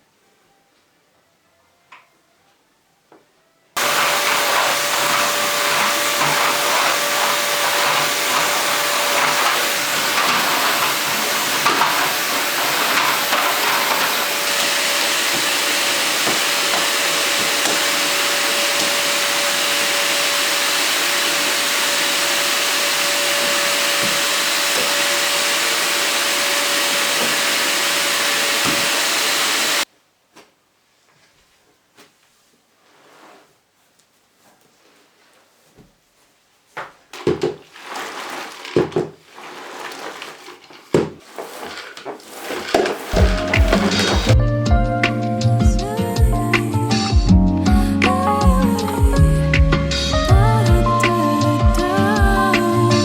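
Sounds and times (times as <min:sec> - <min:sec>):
vacuum cleaner running: 0:03.8 - 0:29.9, 0:37.8 - 0:44.4, 0:45.8 - 0:53.0.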